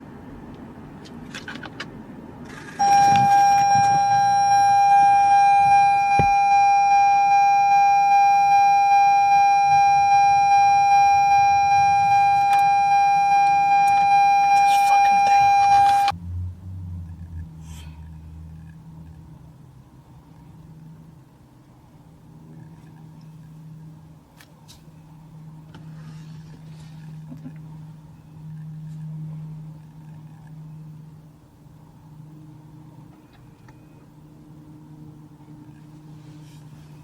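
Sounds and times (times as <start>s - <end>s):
low traffic noise: 0.0s - 37.0s
vehicle engine humming: 0.0s - 37.0s
steady horn tone: 2.8s - 16.1s.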